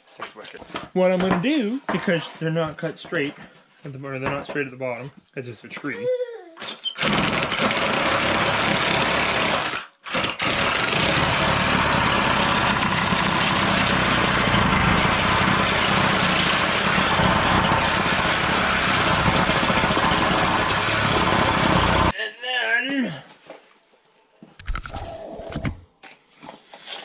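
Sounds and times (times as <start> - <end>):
power tool motor running: 7.0 - 22.1.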